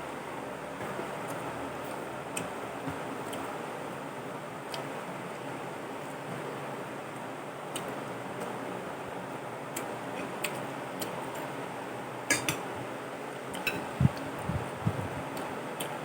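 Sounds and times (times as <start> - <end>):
utensils clicking on a plate: 12.3 - 12.6.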